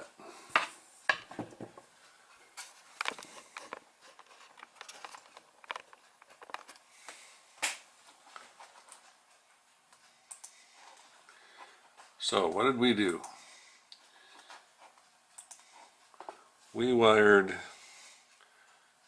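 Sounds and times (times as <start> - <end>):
hand handling noises: 2.5 - 13.4
light clicks and taps: 2.6 - 11.4.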